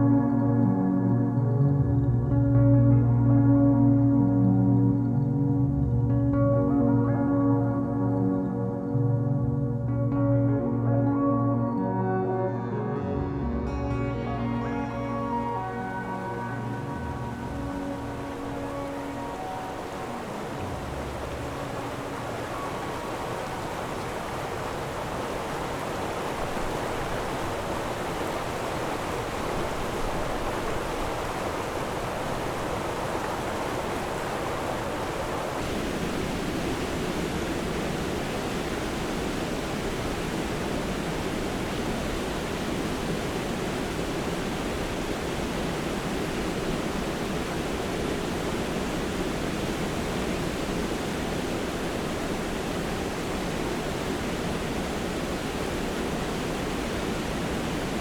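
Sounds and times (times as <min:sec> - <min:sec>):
water rushing over a dam: 0:15.8 - 0:58.0.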